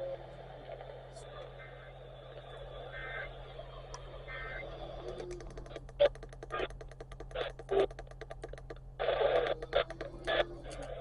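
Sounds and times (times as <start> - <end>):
radio hiss: 0.0 - 5.2, 9.0 - 11.0
fast clicking like typing: 5.1 - 10.9.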